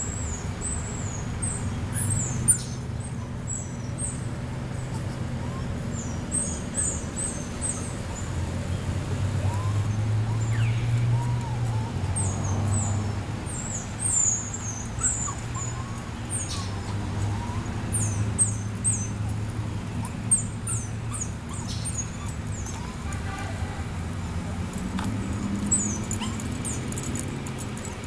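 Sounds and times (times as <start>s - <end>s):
dog whining: 14.1s - 19.3s, 19.9s - 23.2s, 24.9s - 27.6s.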